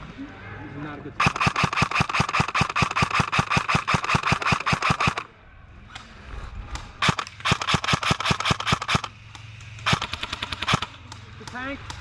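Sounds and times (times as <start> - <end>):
airsoft gun firing full auto: 1.2 - 5.3, 7.0 - 9.2, 9.8 - 11.0.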